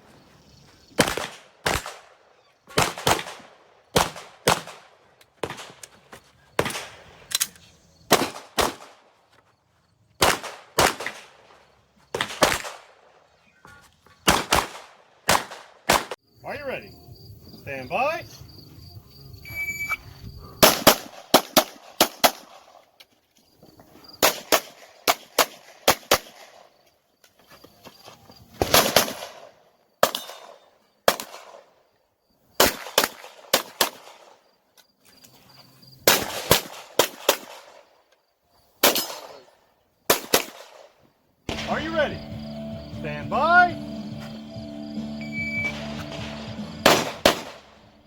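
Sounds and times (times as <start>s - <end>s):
pistol shots: 1.0s - 5.8s, 6.6s - 7.0s, 8.1s - 9.0s, 10.2s - 11.5s, 12.1s - 13.1s, 14.3s - 16.2s, 20.6s - 22.7s, 24.2s - 26.6s, 28.6s - 31.7s, 32.6s - 34.4s, 36.1s - 37.8s, 38.8s - 39.5s, 40.1s - 40.9s, 45.6s - 47.9s
shot timer beep: 19.5s - 20.0s, 45.2s - 45.8s.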